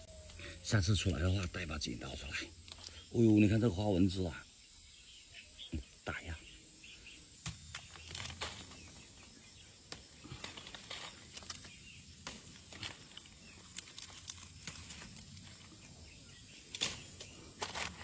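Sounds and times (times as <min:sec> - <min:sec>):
leaves rustling: 0:00.0 - 0:04.4, 0:06.7 - 0:18.0
grape bunches snapping: 0:00.1 - 0:02.0, 0:02.6 - 0:03.6, 0:07.4 - 0:18.0.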